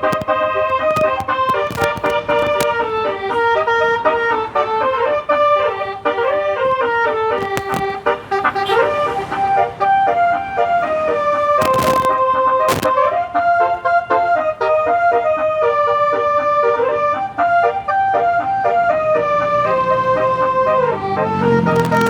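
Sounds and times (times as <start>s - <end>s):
musical air horn playing a tune: 0.0s - 7.4s, 8.2s - 17.4s.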